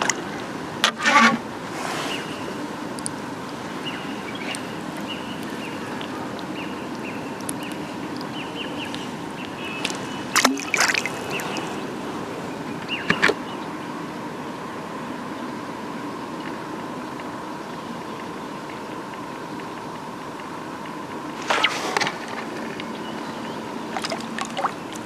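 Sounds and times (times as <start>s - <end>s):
water trickling and sloshing: 6.0s - 12.0s, 23.8s - 25.0s.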